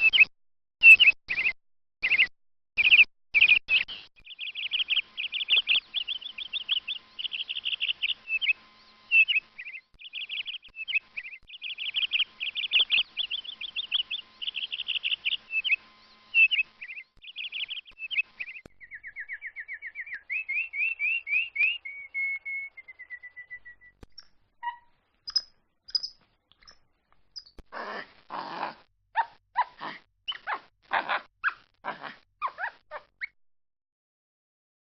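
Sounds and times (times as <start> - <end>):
canary singing trills: 0.9 - 26.8, 27.4 - 33.4
monkey harsh calls: 24.6 - 26.1, 27.4 - 33.2.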